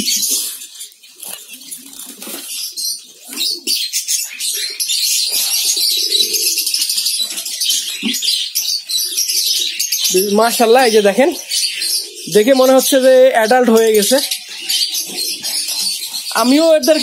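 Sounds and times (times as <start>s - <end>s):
finches chattering: 0.0s - 17.0s
wings fluttering: 0.2s - 3.7s.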